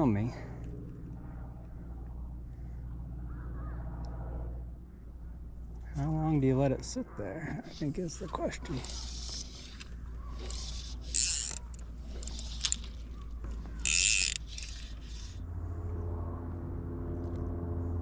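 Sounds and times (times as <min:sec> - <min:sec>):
electric motor humming: 0:07.7 - 0:15.4.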